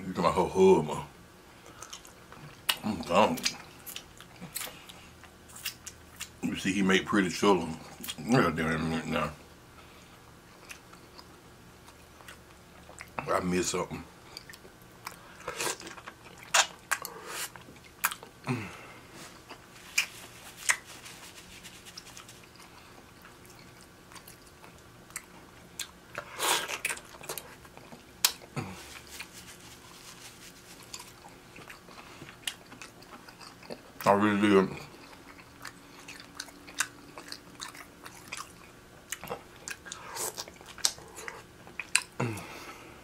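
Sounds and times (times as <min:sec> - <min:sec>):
close chewing and biting: 0:01.6 - 0:06.4, 0:14.3 - 0:18.6, 0:19.3 - 0:34.1, 0:34.7 - 0:42.4.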